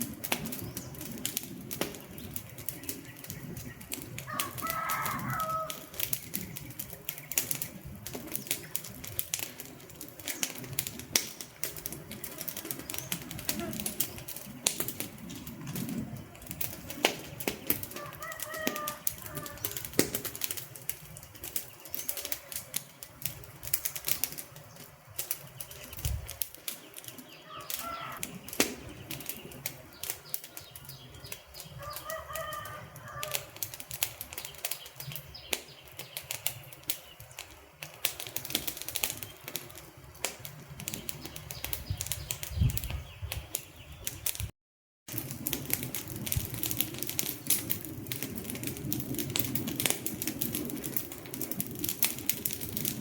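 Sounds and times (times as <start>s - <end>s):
wood fire crackling and popping: 0.0s - 44.5s, 45.1s - 53.0s.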